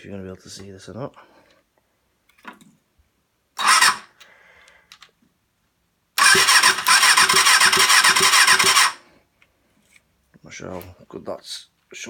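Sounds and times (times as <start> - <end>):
electric starter cranking engine: 3.6 - 4.1, 6.2 - 9.0.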